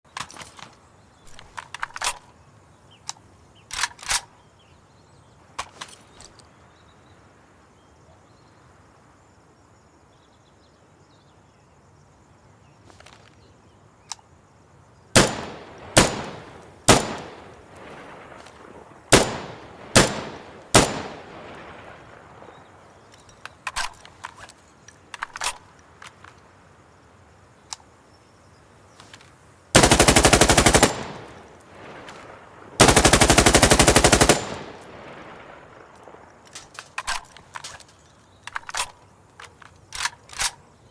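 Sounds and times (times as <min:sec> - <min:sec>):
faint cracks or clicks: 0:00.1 - 0:02.4, 0:03.0 - 0:04.4, 0:05.5 - 0:06.5, 0:23.1 - 0:26.6, 0:29.0 - 0:29.4, 0:31.7 - 0:32.4, 0:34.6 - 0:40.6
rifle shots with ringing tail: 0:15.2 - 0:18.1, 0:19.1 - 0:21.8, 0:29.8 - 0:31.6, 0:32.8 - 0:35.4.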